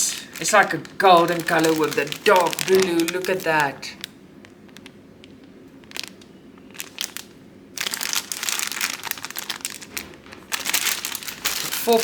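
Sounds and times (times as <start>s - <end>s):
plastic crinkling: 0.0s - 12.0s
plastic packets rustling: 0.0s - 12.0s.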